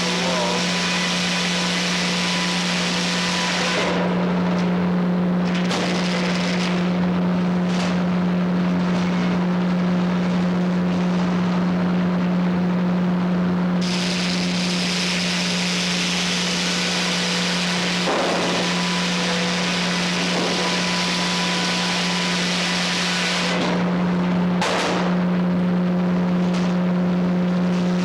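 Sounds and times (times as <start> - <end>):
sawmill running: 0.0 - 7.4, 13.8 - 25.3.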